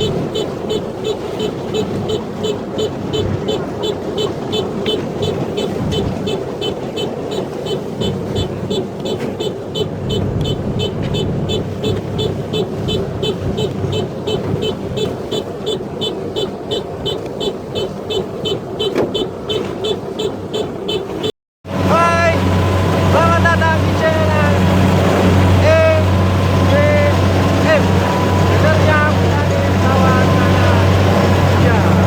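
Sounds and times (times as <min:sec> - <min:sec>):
combine harvester engine running: 0:00.0 - 0:32.0
high ticking: 0:00.0 - 0:32.0.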